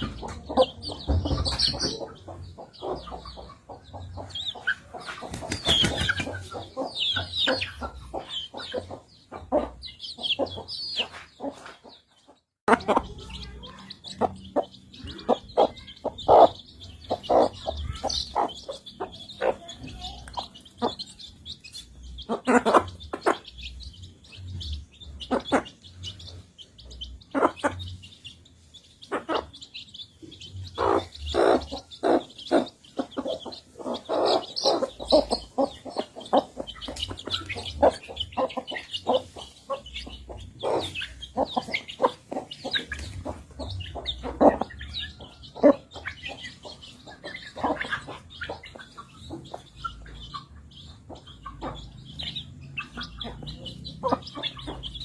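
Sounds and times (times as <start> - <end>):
chickens pecking: 0.0 - 9.8, 30.8 - 52.0
high-pitched chirping: 0.0 - 55.0.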